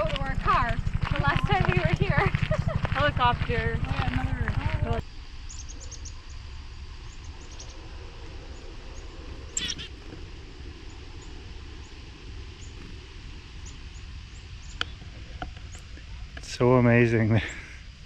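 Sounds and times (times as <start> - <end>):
steady low rumble: 0.0 - 18.0
songbirds chirping: 3.4 - 13.0, 13.6 - 17.7.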